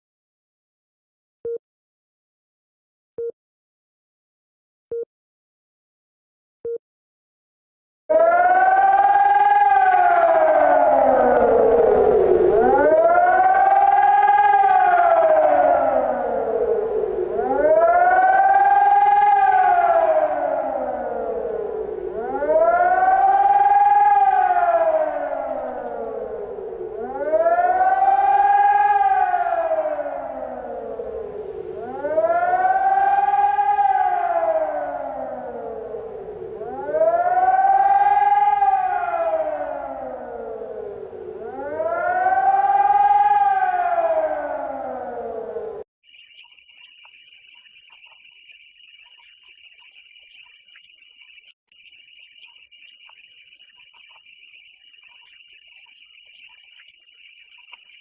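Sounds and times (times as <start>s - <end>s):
emergency siren wailing: 8.1s - 50.8s.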